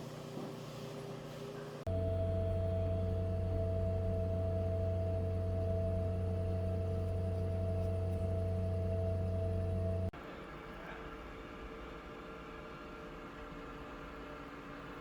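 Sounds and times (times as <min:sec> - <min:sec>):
milling machine humming: 0:01.5 - 0:10.1.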